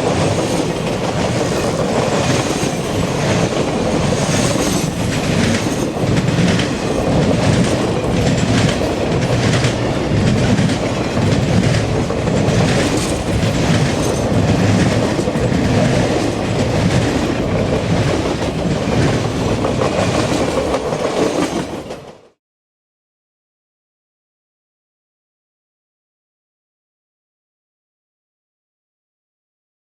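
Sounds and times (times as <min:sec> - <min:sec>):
wheels clacking over rail joints: 0:00.0 - 0:22.2
freight train cars rolling past: 0:00.0 - 0:22.4.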